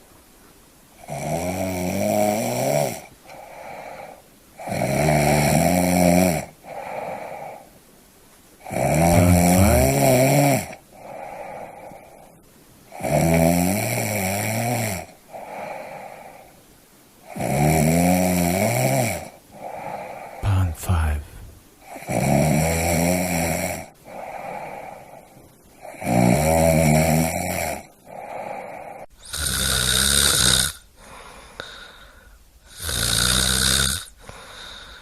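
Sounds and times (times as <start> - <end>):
person snoring: 1.1 - 7.5, 8.7 - 12.0, 17.3 - 25.2.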